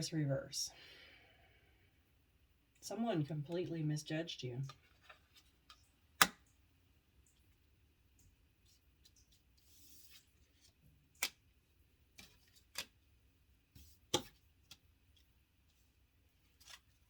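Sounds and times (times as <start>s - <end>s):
cards sliding rustle: 4.7s - 6.3s, 8.6s - 11.5s, 12.1s - 13.1s, 16.4s - 17.0s
cards clicking and tapping: 4.7s - 6.5s, 10.6s - 11.5s, 12.1s - 13.0s, 13.8s - 15.3s.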